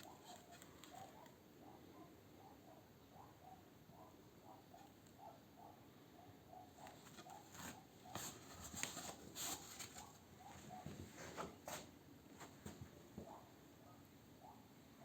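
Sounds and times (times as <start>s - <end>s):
faint clicks and rustling: 0.0s - 1.4s.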